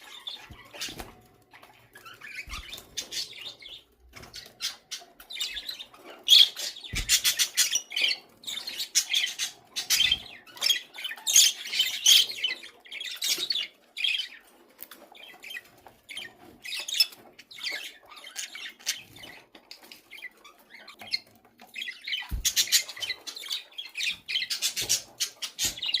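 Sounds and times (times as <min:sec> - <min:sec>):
budgerigars chattering and squawking: 0:00.0 - 0:26.0
soft thumps: 0:06.9 - 0:07.4.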